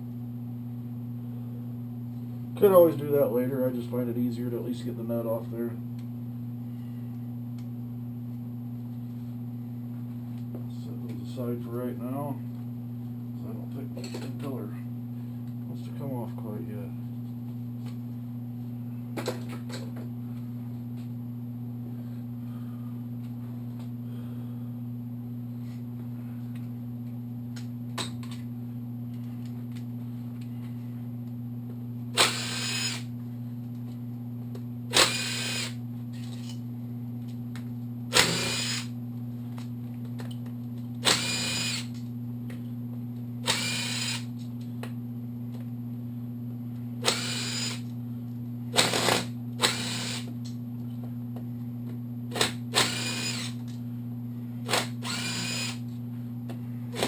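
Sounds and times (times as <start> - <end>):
steady low hum: 0.0 - 57.0
impact driver whining: 32.1 - 33.1, 34.9 - 35.8, 38.1 - 39.0, 41.0 - 42.0, 43.4 - 44.3, 47.0 - 47.9, 48.7 - 50.4, 52.3 - 53.7, 54.6 - 55.9.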